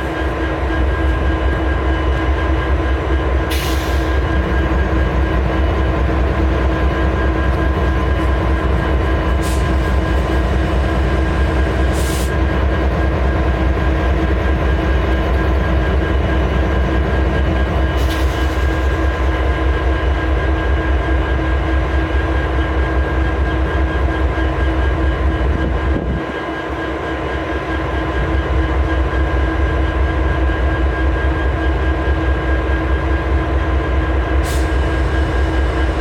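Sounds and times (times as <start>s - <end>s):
locomotives idling: 0.0s - 26.1s.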